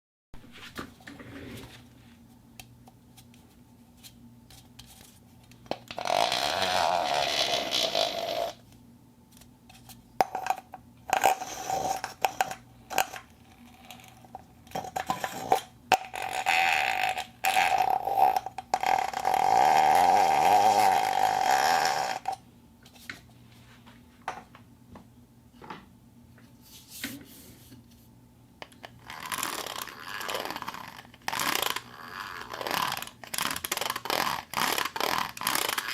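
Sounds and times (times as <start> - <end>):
plastic cup rubbing scrapes: 0.4 - 1.9, 11.1 - 14.2, 29.0 - 35.9.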